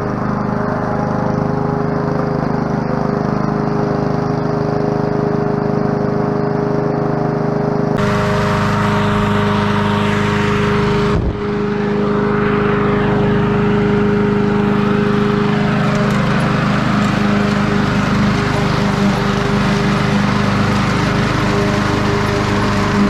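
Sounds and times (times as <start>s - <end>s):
lawn mower engine running: 0.0s - 23.0s.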